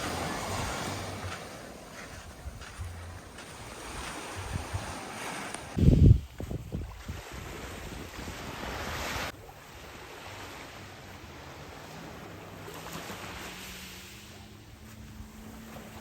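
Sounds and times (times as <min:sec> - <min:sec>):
wind buffeting microphone: 0:00.0 - 0:09.3
sea waves washing ashore: 0:00.0 - 0:16.0.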